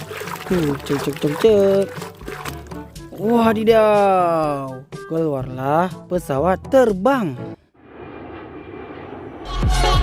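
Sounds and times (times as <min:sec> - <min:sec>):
airplane engine rushing: 0:07.8 - 0:10.0.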